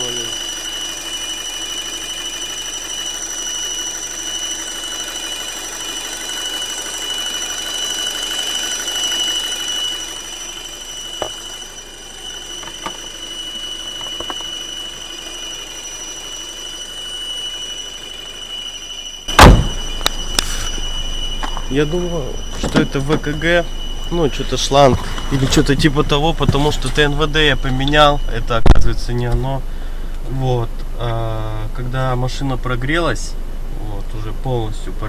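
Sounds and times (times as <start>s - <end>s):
high-pitched whistle: 0.0s - 30.0s
car engine running: 0.0s - 35.0s
loud thump: 19.3s - 20.2s.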